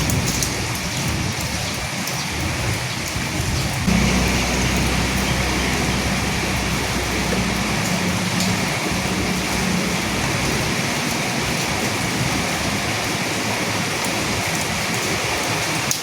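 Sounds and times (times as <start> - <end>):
rain on dead leaves: 0.0 - 16.0
low rumble: 3.9 - 13.4.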